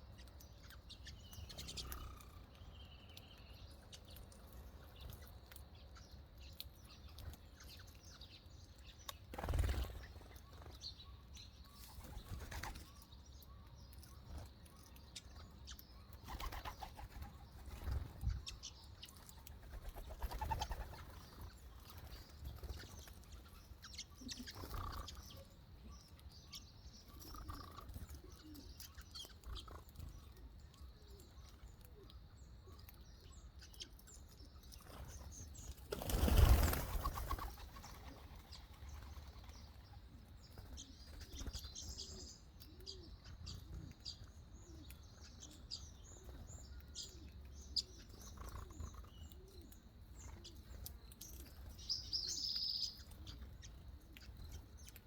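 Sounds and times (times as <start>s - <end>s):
birds chirping and calling: 0.0s - 55.0s.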